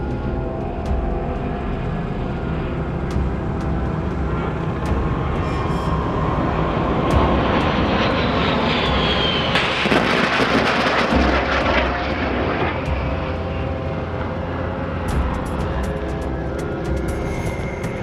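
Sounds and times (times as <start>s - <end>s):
jet aircraft passing: 0.0s - 18.0s.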